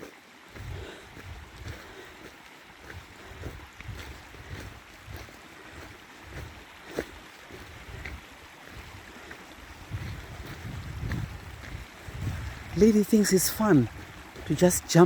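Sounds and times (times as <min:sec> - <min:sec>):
footsteps on wet muddy ground: 0:00.0 - 0:15.0
wind buffeting microphone: 0:00.6 - 0:02.0, 0:02.8 - 0:06.6, 0:07.5 - 0:15.0.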